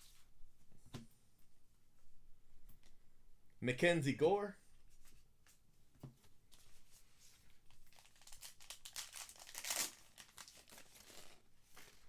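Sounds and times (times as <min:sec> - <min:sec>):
card pack wrapper crinkling and tearing: 0:07.8 - 0:12.0.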